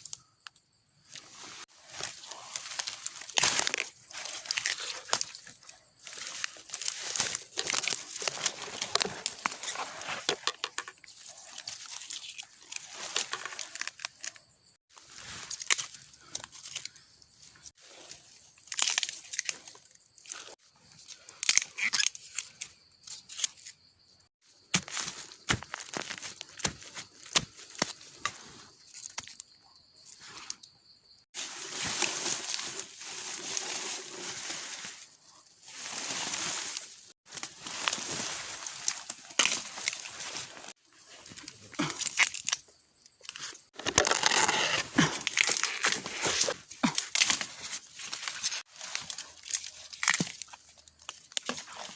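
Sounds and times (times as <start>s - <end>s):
dry leaves crackling and rustling: 1.3s - 10.2s, 31.4s - 40.8s.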